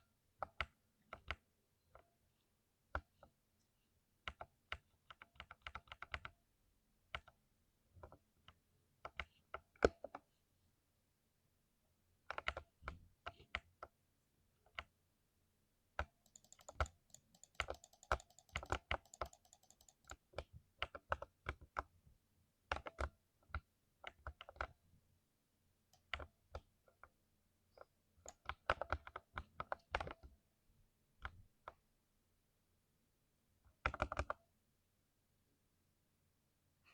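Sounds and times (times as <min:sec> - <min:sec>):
mechanical keyboard typing: 0:16.0 - 0:21.2.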